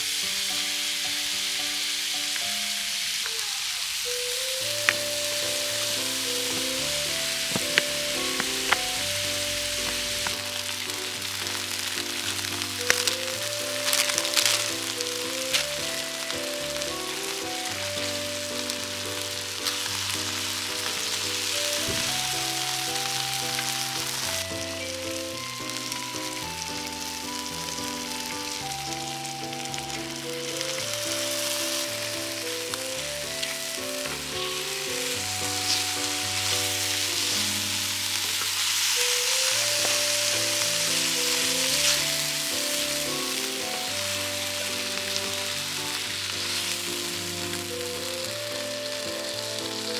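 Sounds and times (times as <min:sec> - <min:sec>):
background music: 0:00.0 - 0:49.9
food frying sizzle: 0:00.0 - 0:49.9.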